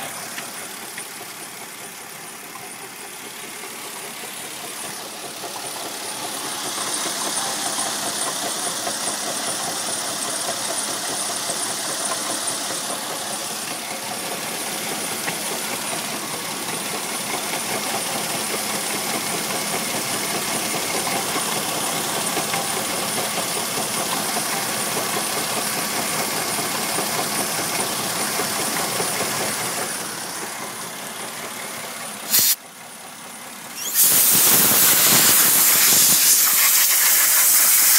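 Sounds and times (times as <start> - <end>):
car engine idling: 0.0 - 37.9
loud steady hiss: 32.3 - 32.6, 33.8 - 37.9.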